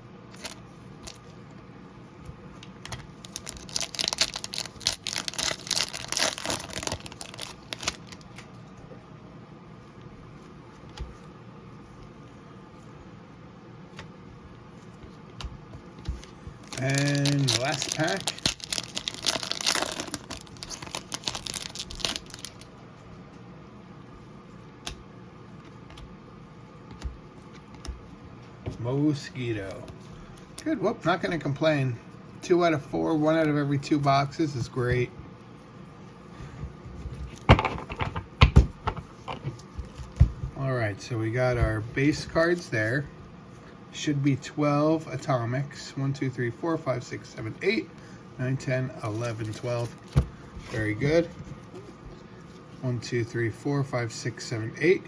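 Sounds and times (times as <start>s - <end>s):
card pack wrapper crinkling: 3.0s - 8.4s, 16.1s - 22.7s.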